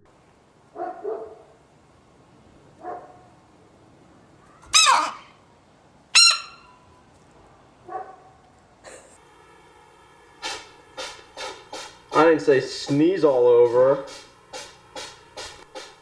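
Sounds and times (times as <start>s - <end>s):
animal calls short and sharp: 4.5s - 5.4s, 6.2s - 6.8s.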